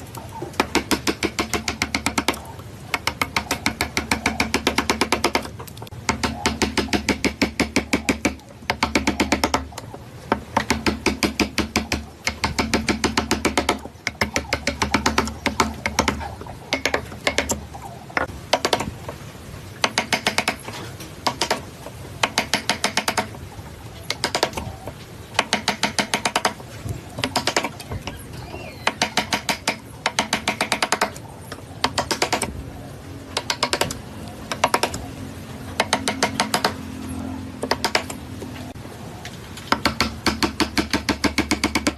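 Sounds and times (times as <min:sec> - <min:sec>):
rapid mechanical clicking: 0:39.7 - 0:41.9.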